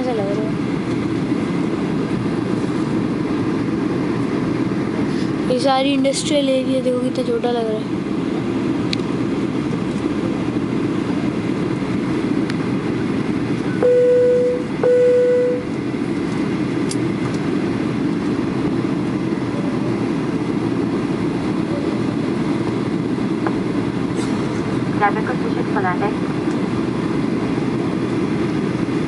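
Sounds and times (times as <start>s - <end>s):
airliner cabin noise: 0.0s - 29.0s
short loud tones: 13.8s - 15.7s.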